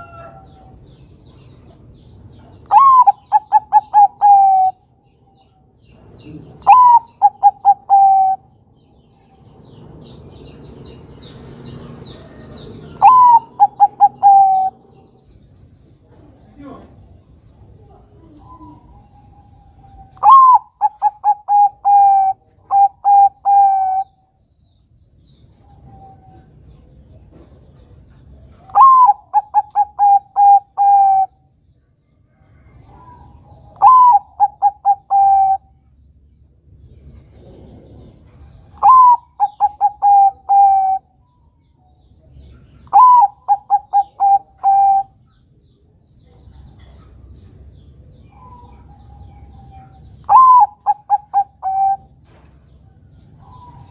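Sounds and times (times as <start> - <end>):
dove cooing: 2.4 - 4.8, 6.2 - 8.6, 12.3 - 15.3, 17.9 - 24.2, 28.6 - 31.4, 32.9 - 35.8, 37.4 - 41.1, 42.8 - 45.2, 48.3 - 52.4.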